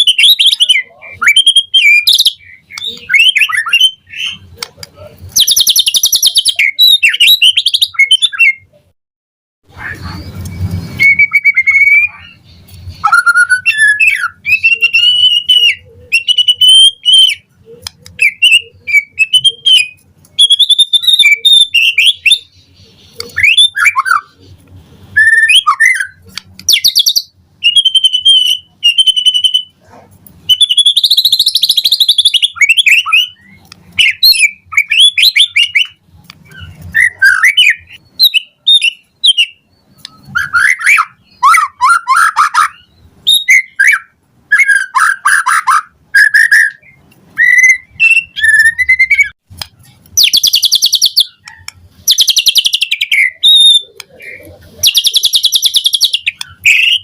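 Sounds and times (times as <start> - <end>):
bird singing whistled phrases: 0.0 - 4.5, 5.4 - 8.7, 9.7 - 17.5, 18.1 - 24.4, 25.2 - 29.8, 30.4 - 49.4, 50.2 - 57.0.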